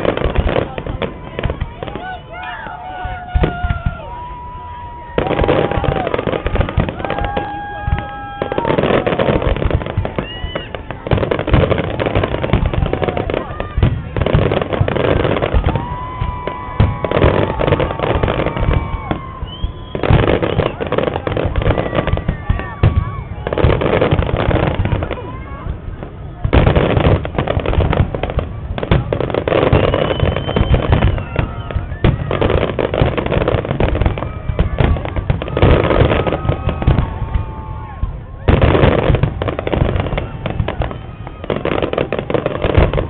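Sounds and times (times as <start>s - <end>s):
fireworks booming: 0.0s - 43.0s
fireworks crackling: 0.0s - 43.0s
steady whistle-like tone: 19.2s - 20.8s, 29.8s - 32.0s.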